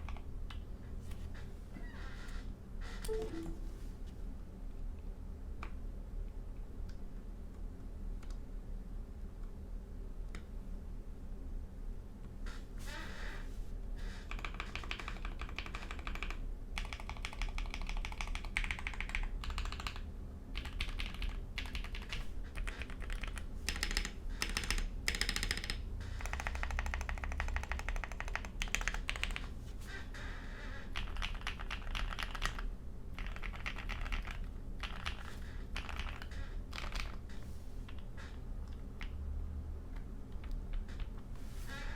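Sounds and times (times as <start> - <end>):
typing on mechanical keyboard: 0.0 - 0.6, 14.3 - 29.5, 31.0 - 37.2.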